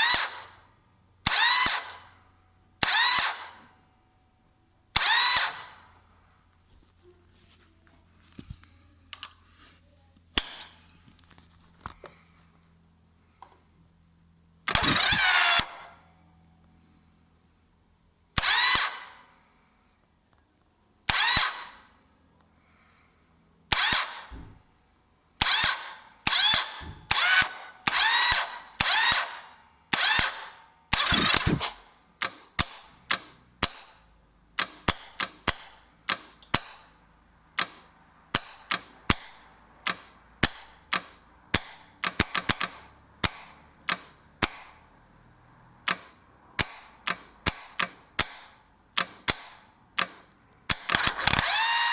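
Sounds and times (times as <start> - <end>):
electric starter whirring: 14.7 - 16.2, 25.4 - 32.0, 50.7 - 51.9
starter clicking: 31.0 - 33.2, 49.0 - 51.9.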